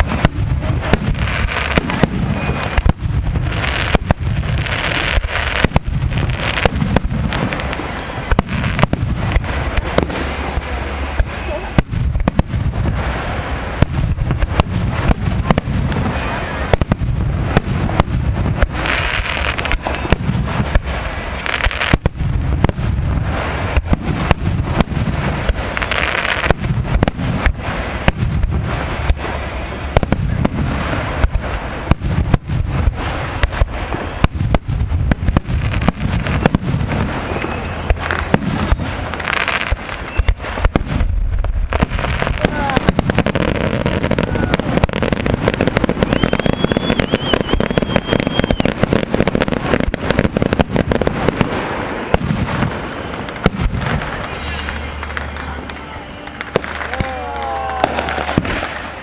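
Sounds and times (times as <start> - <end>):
fireworks bangs: 0.0 - 59.0
fireworks crackling: 0.0 - 59.0.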